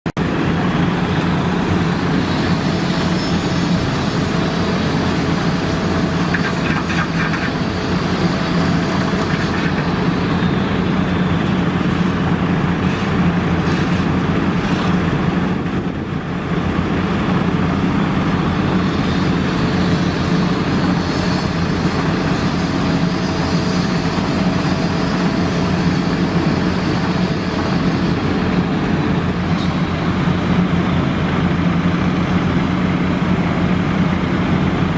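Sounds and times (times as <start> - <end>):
diesel engine running: 0.1 - 34.9.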